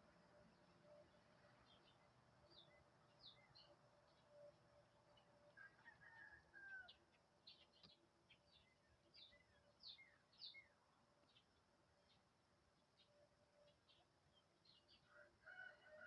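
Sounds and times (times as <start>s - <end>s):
small birds chirping: 0.3s - 5.5s, 6.8s - 15.2s.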